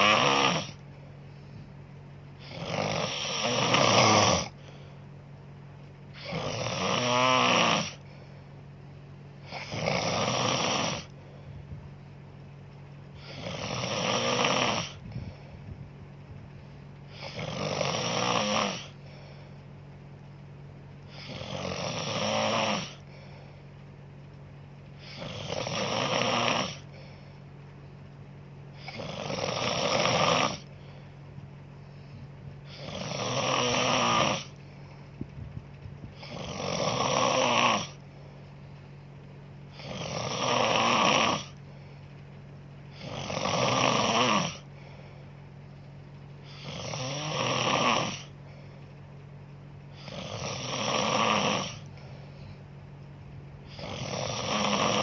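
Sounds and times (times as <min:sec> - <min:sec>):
person snoring: 0:00.0 - 0:01.7, 0:02.4 - 0:04.9, 0:06.1 - 0:08.2, 0:09.4 - 0:11.5, 0:13.2 - 0:15.5, 0:17.1 - 0:19.5, 0:21.1 - 0:23.5, 0:25.0 - 0:27.3, 0:28.7 - 0:31.1, 0:31.9 - 0:34.6, 0:36.1 - 0:38.1, 0:39.7 - 0:41.6, 0:42.9 - 0:45.2, 0:46.4 - 0:48.6, 0:49.9 - 0:52.6, 0:53.6 - 0:55.0
steady low hum: 0:00.0 - 0:55.0.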